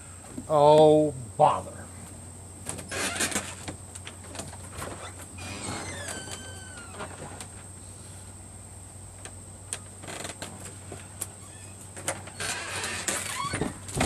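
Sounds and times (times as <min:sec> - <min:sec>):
short falling squeak: 0:05.0 - 0:07.2, 0:11.4 - 0:13.8.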